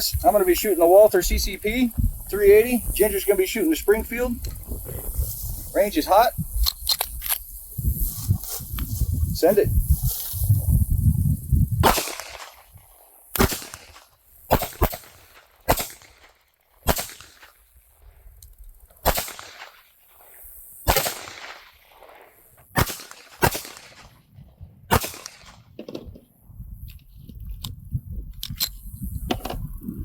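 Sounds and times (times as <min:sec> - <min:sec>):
pistol shots: 0:11.8 - 0:12.6, 0:13.4 - 0:16.2, 0:16.8 - 0:17.4, 0:19.0 - 0:19.7, 0:20.9 - 0:21.7, 0:22.8 - 0:24.1, 0:24.9 - 0:25.6.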